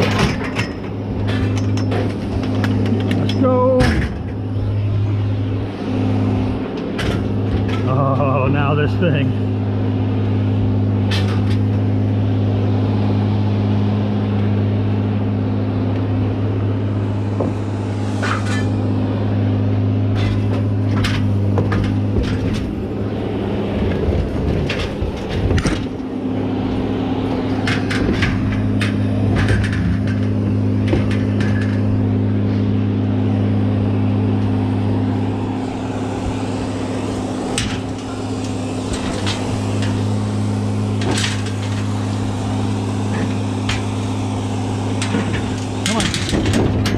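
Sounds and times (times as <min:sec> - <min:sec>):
knocks and clanks: 0:00.0 - 0:04.5, 0:06.5 - 0:08.1, 0:11.0 - 0:11.9, 0:17.2 - 0:18.9, 0:20.1 - 0:32.8, 0:35.2 - 0:46.9
vehicle engine idling: 0:00.0 - 0:46.9.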